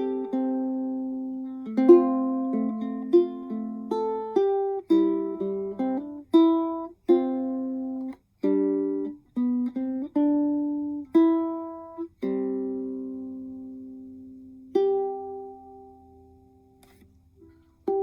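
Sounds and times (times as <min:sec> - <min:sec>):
ukulele played fingerstyle: 0:00.0 - 0:18.0.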